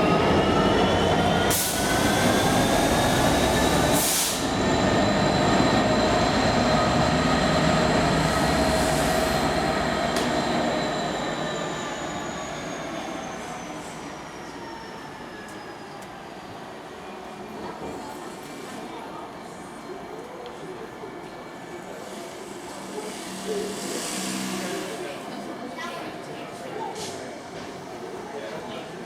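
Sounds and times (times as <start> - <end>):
train rumbling: 0.0 - 14.0.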